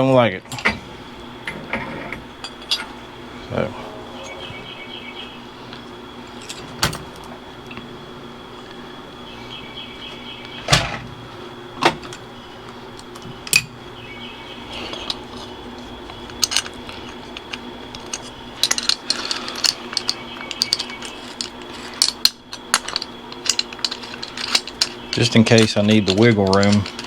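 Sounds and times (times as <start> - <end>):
faint hum: 0.0 - 27.0
metal parts clinking: 14.8 - 27.0.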